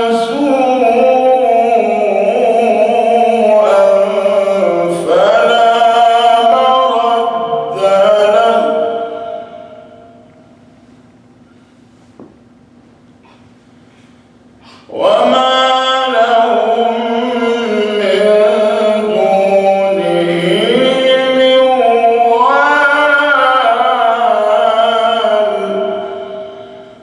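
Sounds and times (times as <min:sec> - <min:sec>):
man chanting melodically: 0:00.0 - 0:10.3, 0:14.9 - 0:27.0.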